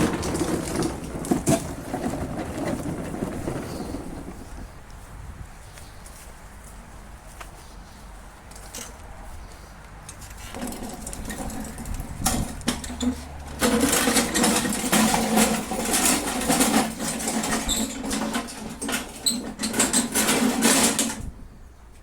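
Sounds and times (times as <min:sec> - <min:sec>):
irregular rattling: 0:00.0 - 0:04.5, 0:10.4 - 0:21.3
lawn mower engine running: 0:00.0 - 0:04.7, 0:10.3 - 0:21.4.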